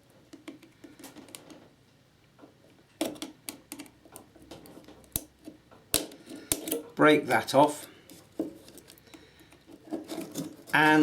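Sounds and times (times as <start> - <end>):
hand tool clicking and tapping: 3.0 - 6.9.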